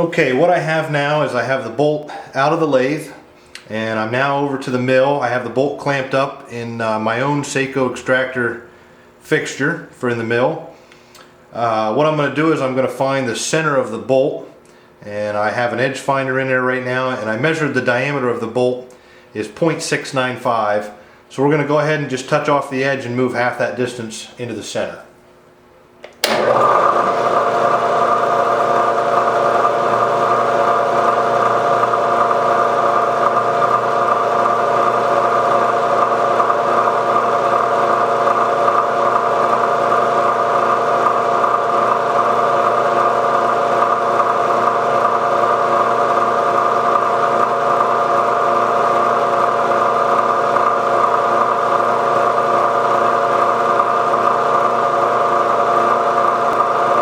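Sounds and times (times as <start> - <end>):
milling machine spindle hum: 26.0 - 57.0.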